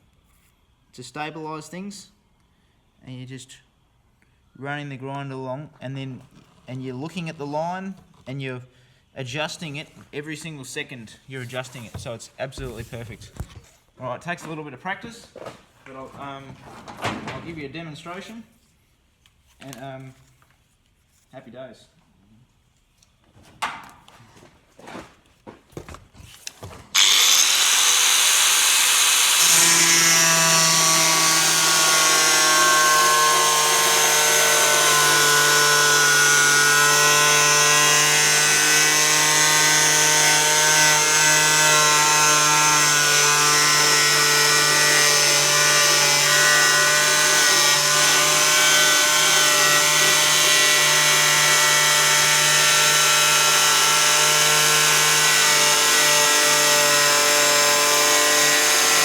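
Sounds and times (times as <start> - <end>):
angle grinder cutting fibreglass: 26.9 - 59.0.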